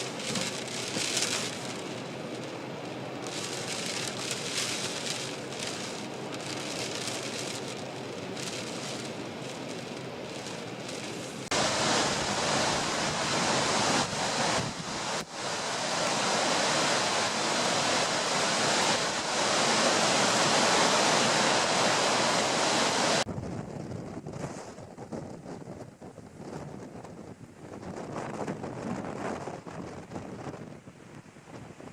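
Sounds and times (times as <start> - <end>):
wind buffeting microphone: 0.0 - 15.3, 23.2 - 31.9.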